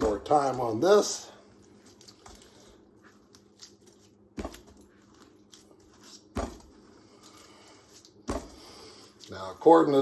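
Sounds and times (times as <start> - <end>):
pineapple thudding on counter: 4.4 - 4.8, 6.3 - 6.7, 8.2 - 8.6.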